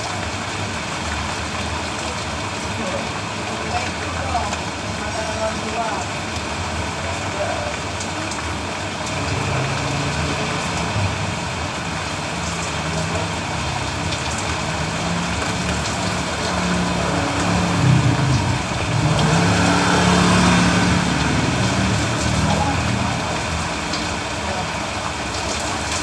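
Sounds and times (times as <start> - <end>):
rain hiss: 0.0 - 26.0
vehicle engine humming: 8.0 - 25.6.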